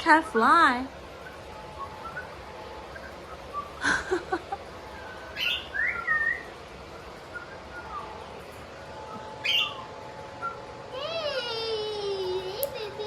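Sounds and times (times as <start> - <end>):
bird chirping: 5.0 - 10.8.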